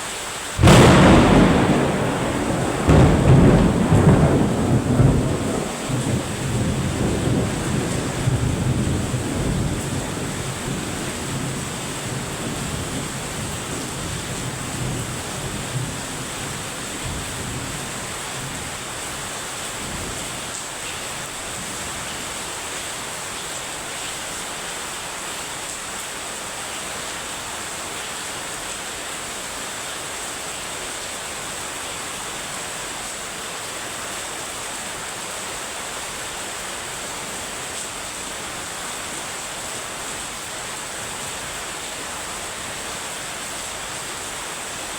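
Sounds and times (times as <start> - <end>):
heavy rain: 0.0 - 44.9
thunder rumble: 0.6 - 22.5.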